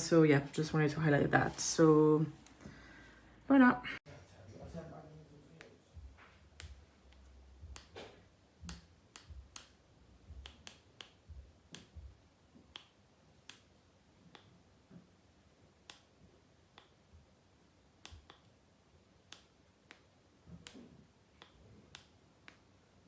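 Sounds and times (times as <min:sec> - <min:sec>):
faint sharp clicks and taps: 0:04.7 - 0:15.1, 0:15.8 - 0:16.1, 0:16.7 - 0:17.3, 0:18.0 - 0:18.6, 0:19.2 - 0:22.7.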